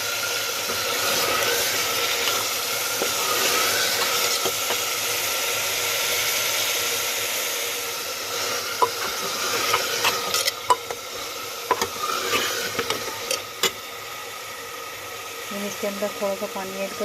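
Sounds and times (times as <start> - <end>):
curry sizzling in a pan: 0.0 - 17.0
spatula scraping a pan: 0.6 - 5.1, 8.2 - 13.8.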